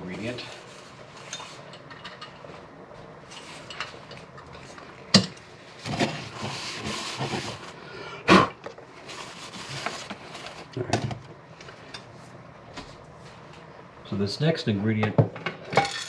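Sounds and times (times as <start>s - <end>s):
rough rubbing noise: 5.8s - 7.8s.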